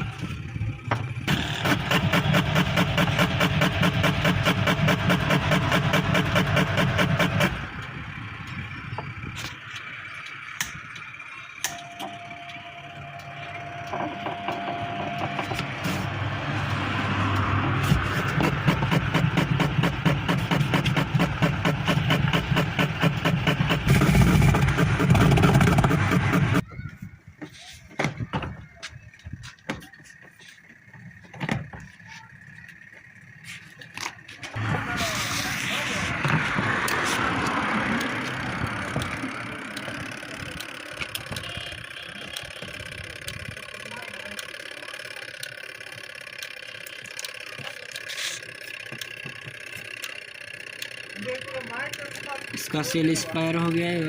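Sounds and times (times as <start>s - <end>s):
faint steady tone: 9.9s - 15.5s
washing machine motor humming: 11.1s - 17.4s.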